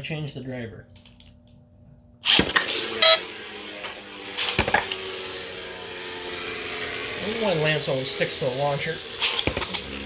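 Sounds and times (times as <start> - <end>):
spinning top launch rip: 2.2 - 7.4, 9.1 - 10.0
spinning tops whirring: 2.2 - 10.0.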